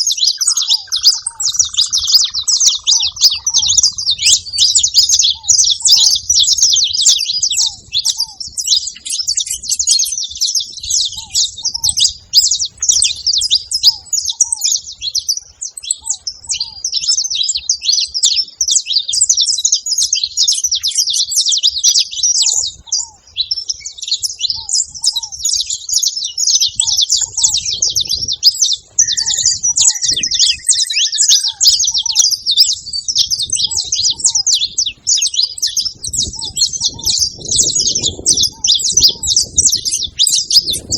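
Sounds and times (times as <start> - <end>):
doves cooing: 0.0 - 9.1, 10.9 - 17.0, 26.6 - 40.9
finch singing high chirps: 0.0 - 40.9.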